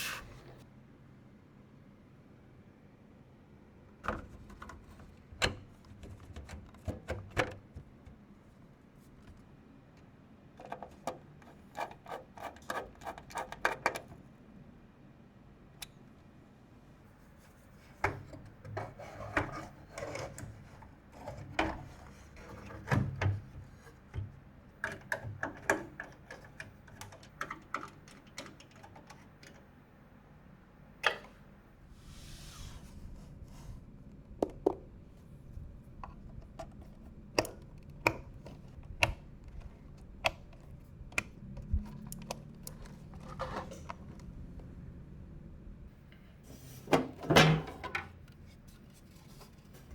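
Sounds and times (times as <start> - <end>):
hands handling computer parts: 17.6 - 29.7.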